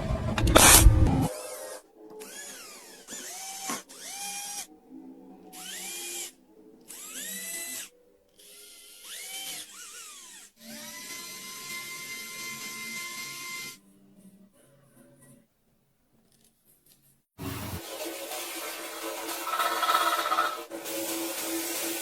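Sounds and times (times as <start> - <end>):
electric drill motor whining: 0.0 - 4.7, 5.5 - 13.8.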